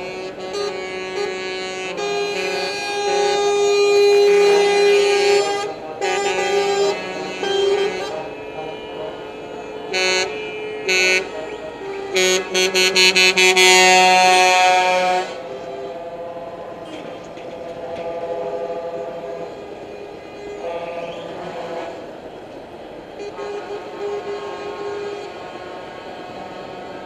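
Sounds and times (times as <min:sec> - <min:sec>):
truck air horns: 0:00.0 - 0:27.0
steady vehicle sound: 0:03.0 - 0:24.0.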